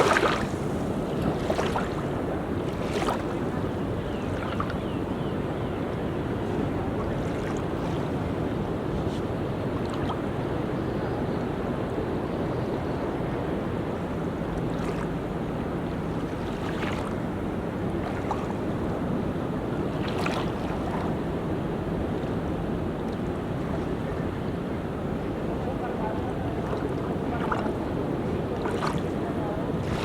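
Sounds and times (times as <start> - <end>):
bright surf splashes: 0.0 - 3.4, 29.8 - 30.0
sea waves washing onto beach: 0.0 - 4.8, 13.3 - 30.0.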